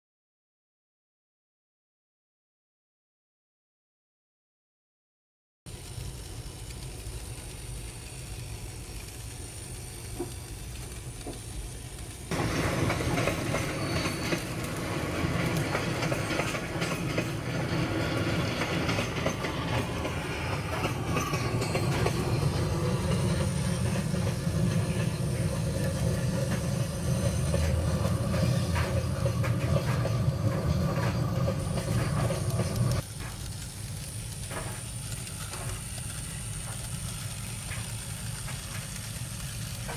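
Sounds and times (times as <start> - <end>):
model locomotive running: 5.7 - 39.9
rapid patter of fine clicks: 32.5 - 39.9.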